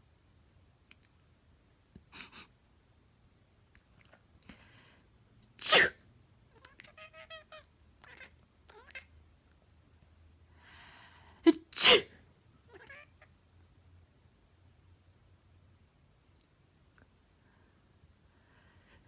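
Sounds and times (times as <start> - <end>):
person sneezing loudly: 5.6 - 6.0, 11.5 - 12.1
cat chattering chirps: 12.7 - 13.2.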